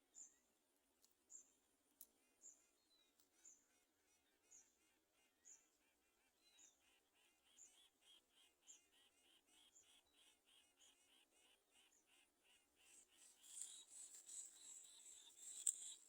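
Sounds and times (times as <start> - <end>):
bird chirping: 2.2 - 16.0.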